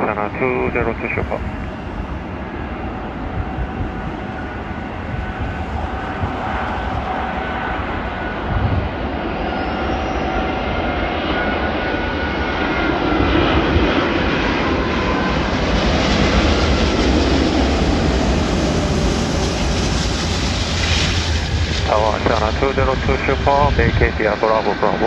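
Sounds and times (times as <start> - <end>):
jet airliner landing: 0.0 - 25.0.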